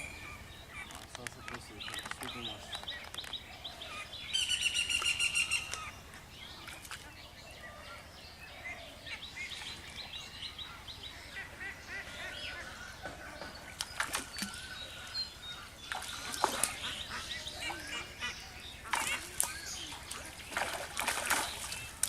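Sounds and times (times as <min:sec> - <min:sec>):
birds calling: 0:00.0 - 0:22.0
sharp clicks: 0:00.8 - 0:03.4.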